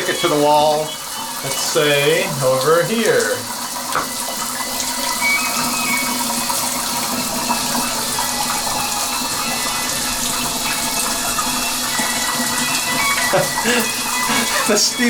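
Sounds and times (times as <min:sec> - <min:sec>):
shower water running: 0:00.0 - 0:15.0.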